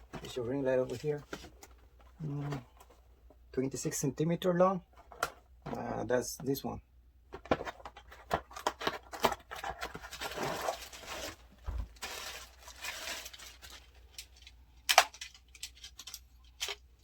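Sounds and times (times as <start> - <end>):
packaging rustling: 7.3 - 16.8.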